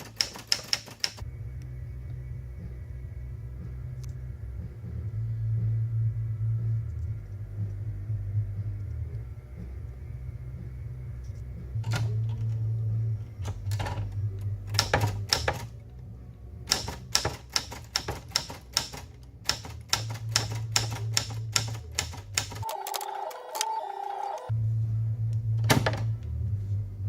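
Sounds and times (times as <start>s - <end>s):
typewriter key strikes: 0.0s - 1.2s, 14.7s - 15.7s, 16.7s - 22.8s.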